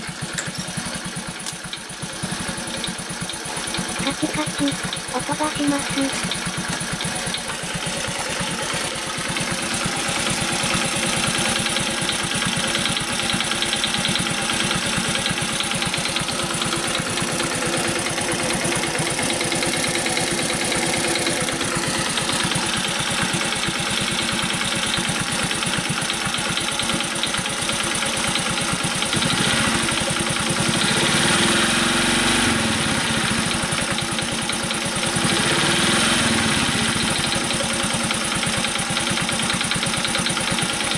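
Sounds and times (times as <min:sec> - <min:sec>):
small engine idling: 0:00.0 - 0:40.9
engine revving: 0:29.0 - 0:38.2.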